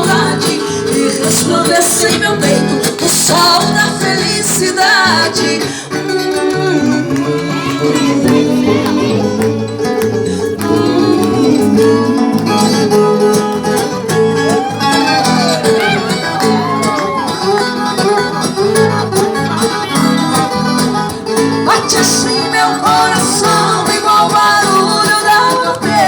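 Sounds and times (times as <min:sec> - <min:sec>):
plucked guitars: 0:00.0 - 0:26.0
sliding melody: 0:06.0 - 0:19.9.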